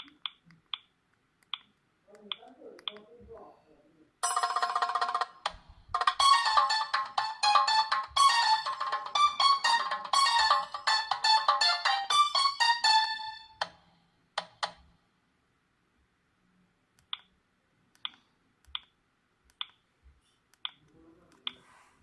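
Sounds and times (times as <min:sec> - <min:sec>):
polyphonic ringtone: 0:04.2 - 0:13.7.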